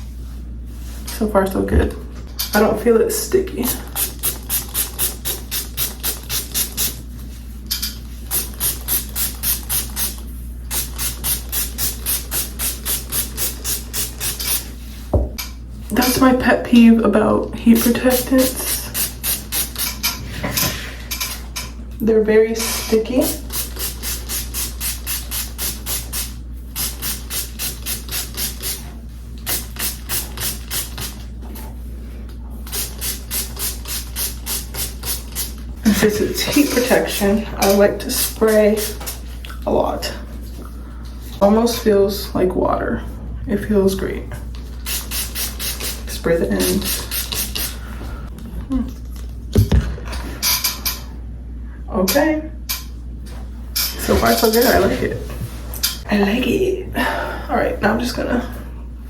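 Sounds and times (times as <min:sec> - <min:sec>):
spray bottle hissing sprays: 0:08.3 - 0:14.7, 0:22.6 - 0:28.8, 0:29.4 - 0:31.2, 0:32.7 - 0:39.2, 0:44.6 - 0:47.8.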